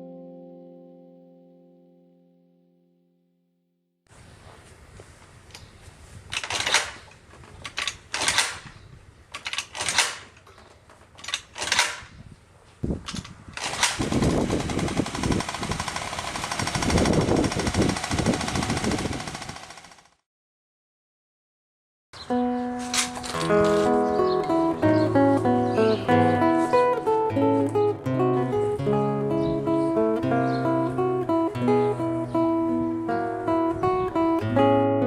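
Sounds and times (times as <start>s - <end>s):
scooter engine revving: 14.0s - 19.9s.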